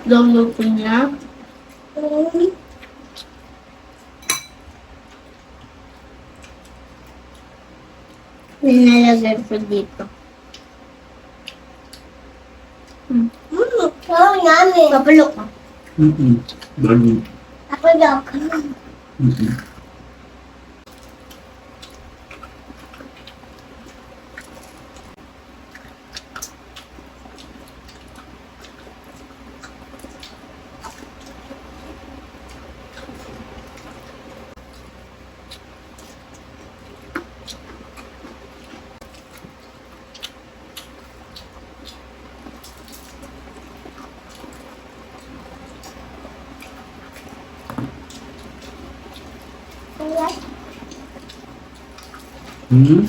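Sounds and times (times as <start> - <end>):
small eating clicks: 0.0 - 19.9, 20.9 - 53.0
people chewing crispy food: 0.0 - 53.0.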